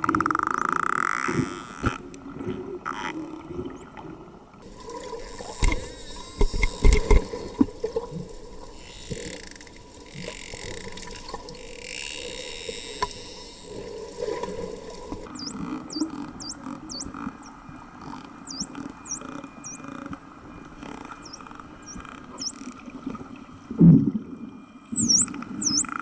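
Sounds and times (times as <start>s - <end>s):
dolphin clicks: 4.8s - 22.8s, 24.9s - 26.0s
underwater hiss: 12.7s - 15.4s
dolphin whistles: 15.2s - 20.0s, 20.8s - 22.7s, 24.6s - 26.0s.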